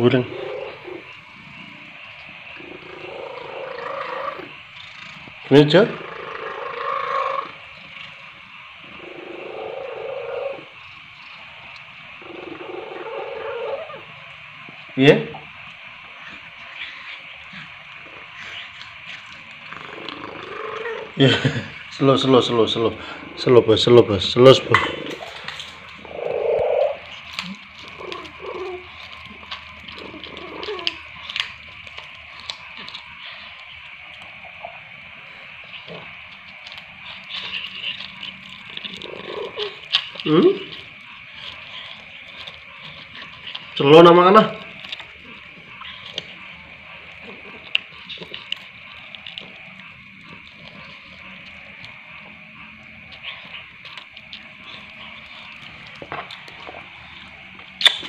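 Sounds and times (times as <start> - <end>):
cat purring: 0.0 - 58.0
cat mewing: 2.6 - 5.3, 5.9 - 7.9, 26.0 - 29.1.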